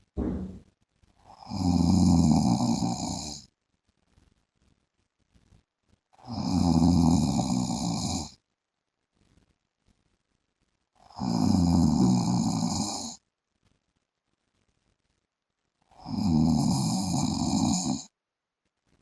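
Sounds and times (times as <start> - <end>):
man snoring: 1.4 - 3.4, 6.2 - 8.3, 11.1 - 13.2, 16.0 - 18.1.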